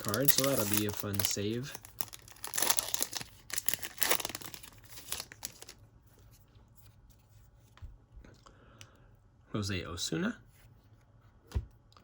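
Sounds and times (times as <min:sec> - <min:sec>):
foil wrapper tearing and crinkling: 0:00.0 - 0:05.8.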